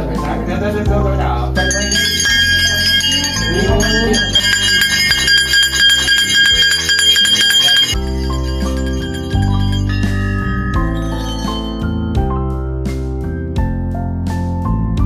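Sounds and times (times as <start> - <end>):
held bass line: 0.8 - 15.0
bell-like music tones: 1.6 - 13.1.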